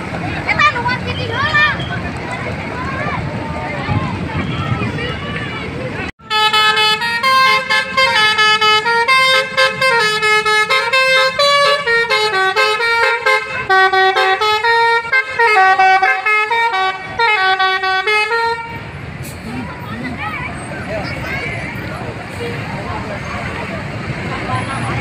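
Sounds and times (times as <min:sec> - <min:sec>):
musical bus air horn melody: 0:06.2 - 0:19.0.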